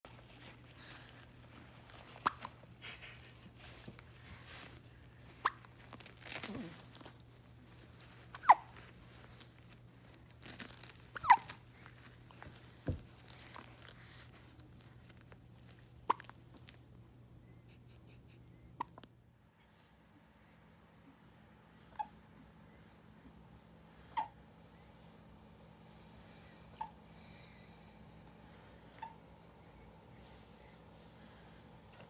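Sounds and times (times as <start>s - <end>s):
faint rustling: 0.1s - 16.9s.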